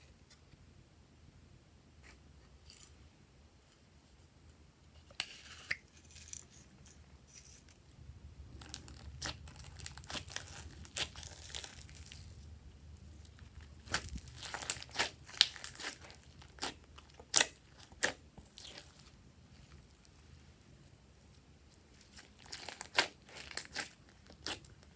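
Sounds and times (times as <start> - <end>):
slime sticky pops and crackles: 13.8 - 19.0.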